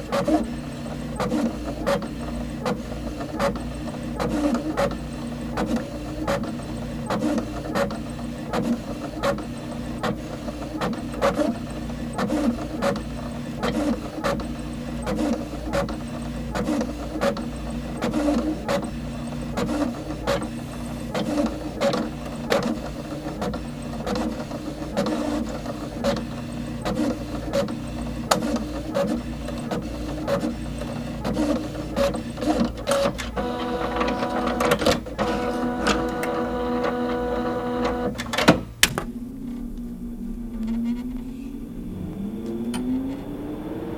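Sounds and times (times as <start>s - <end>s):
printer hum and clicks: 0.0s - 43.9s
motor whine: 38.8s - 43.9s.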